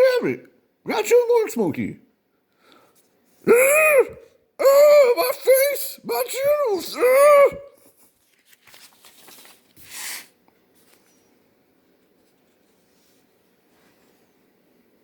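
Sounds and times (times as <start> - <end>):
soft scratching and rustling: 8.1 - 11.3, 12.0 - 14.4.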